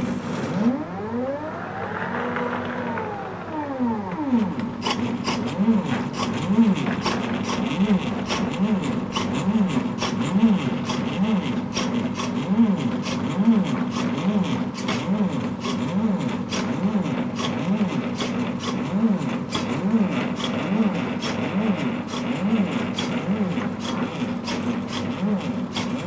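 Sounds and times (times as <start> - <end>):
motor whine rising and falling: 0.0 - 7.0
steady machine hum: 0.0 - 26.0.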